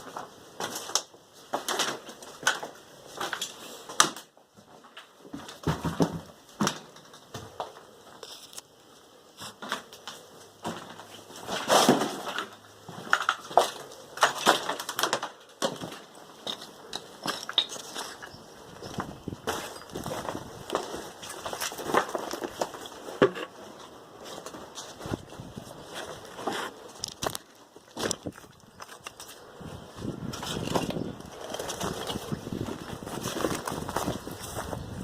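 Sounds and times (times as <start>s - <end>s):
footsteps crunching over debris: 0.0s - 6.7s, 9.4s - 35.0s.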